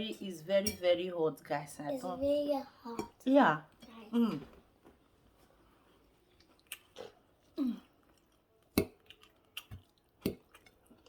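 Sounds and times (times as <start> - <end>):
person chewing food: 6.0 - 11.0.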